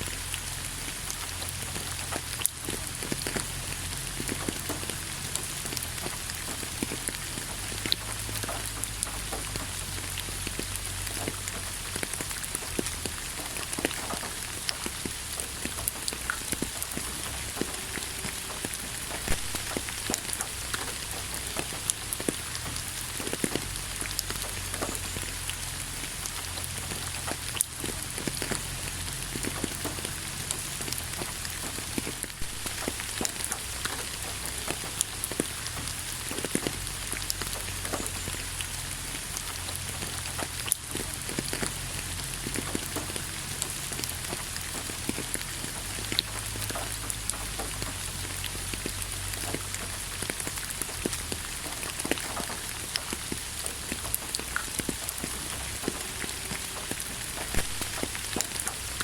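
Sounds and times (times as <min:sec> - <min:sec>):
raindrops ticking: 0:00.0 - 0:59.0
steady rain falling: 0:00.0 - 0:59.0.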